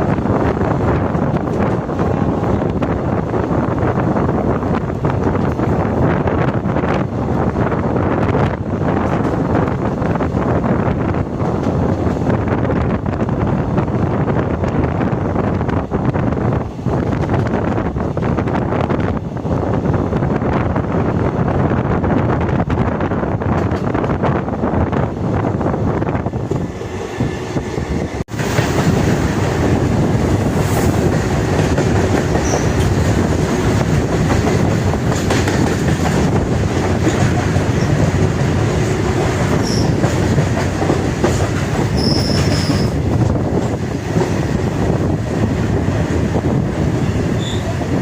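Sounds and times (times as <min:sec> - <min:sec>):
train wheels rumbling on rails: 0:00.0 - 0:48.0
high wheel squeals: 0:32.4 - 0:32.8, 0:39.6 - 0:40.0, 0:41.9 - 0:43.0, 0:47.4 - 0:47.8.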